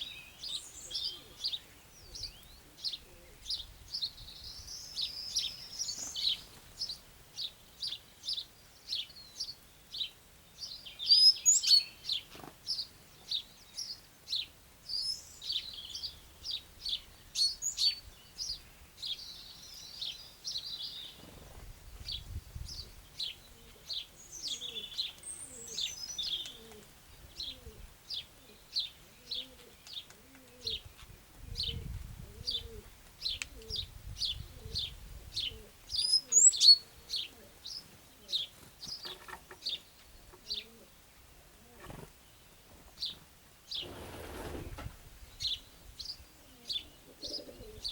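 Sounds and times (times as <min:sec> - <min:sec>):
bird repeating high chirp: 0:36.0 - 0:36.8.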